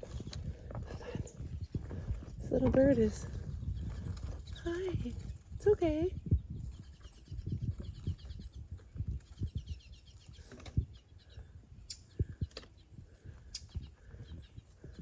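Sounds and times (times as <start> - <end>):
small bird chattering calls: 11.2 - 14.6.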